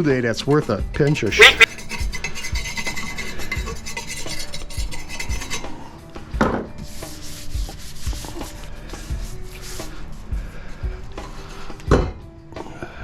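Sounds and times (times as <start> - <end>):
background music with steady beat: 0.0 - 13.0
scraping against copper pipe: 1.3 - 5.9, 6.9 - 10.0.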